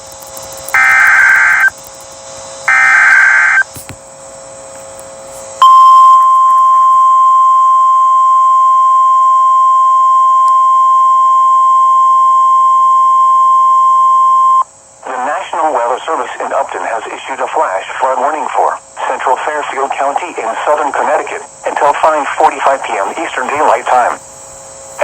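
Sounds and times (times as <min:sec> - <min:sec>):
buzzy data bursts: 0:00.0 - 0:03.9
steady high alarm tone: 0:00.6 - 0:01.8, 0:02.6 - 0:03.7, 0:05.5 - 0:14.8.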